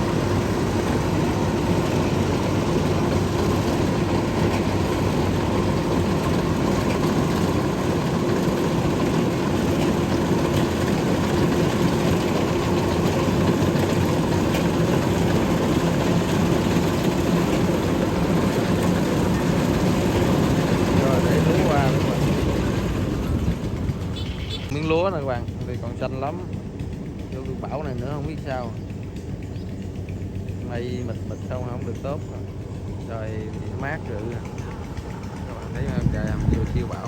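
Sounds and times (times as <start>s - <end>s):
combine harvester running: 0.0s - 37.0s.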